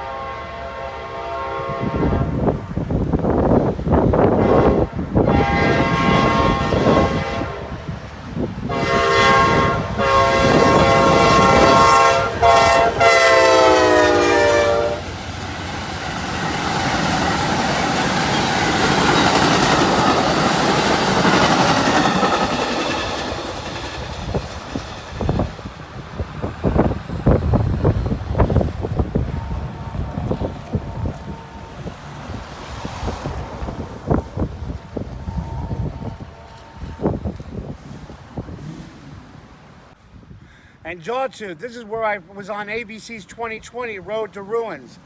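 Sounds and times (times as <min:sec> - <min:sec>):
locomotive horn blasts: 0:00.0 - 0:02.5, 0:04.3 - 0:07.8, 0:08.6 - 0:15.1.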